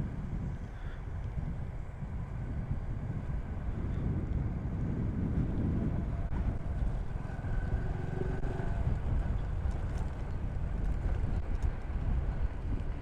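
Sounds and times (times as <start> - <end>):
motorcycle engine rumbling: 3.8 - 12.8.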